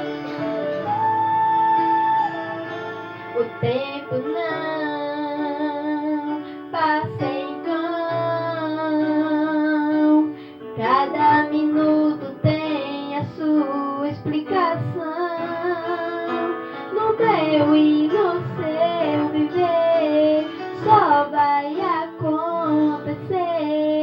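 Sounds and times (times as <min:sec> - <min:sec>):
plucked guitar: 0:00.0 - 0:06.2
woman singing gospel: 0:03.3 - 0:24.0.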